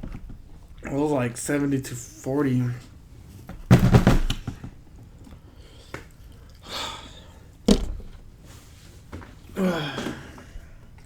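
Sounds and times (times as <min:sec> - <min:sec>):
breathy exhale: 0:06.5 - 0:07.5, 0:09.6 - 0:10.8
sharp thump: 0:07.7 - 0:08.2.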